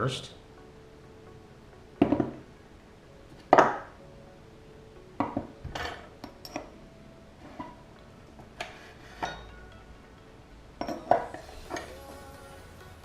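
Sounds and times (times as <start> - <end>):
metal-on-metal knocks and clinks: 10.8 - 11.9.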